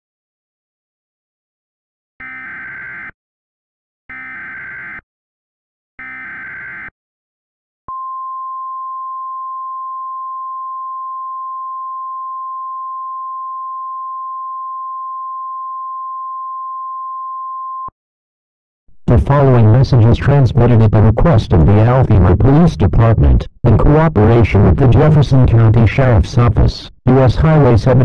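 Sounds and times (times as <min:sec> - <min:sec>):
steady alarm tone: 0:02.2 - 0:03.2, 0:04.1 - 0:05.0, 0:06.0 - 0:06.9.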